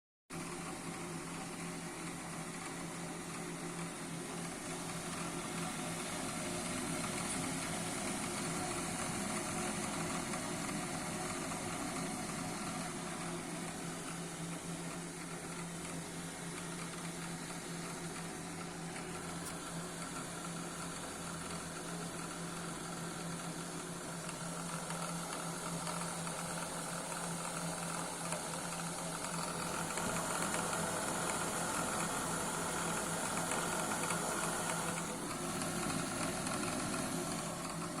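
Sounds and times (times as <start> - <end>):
gas boiler hum: 0.3 - 38.0.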